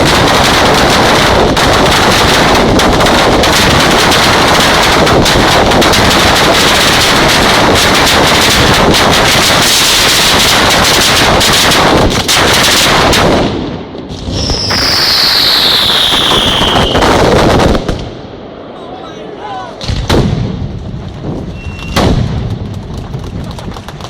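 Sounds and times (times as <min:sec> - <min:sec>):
firework battery rapid bangs: 0:00.0 - 0:18.6, 0:19.8 - 0:24.0
high falling whistle: 0:14.3 - 0:17.0, 0:21.5 - 0:22.1.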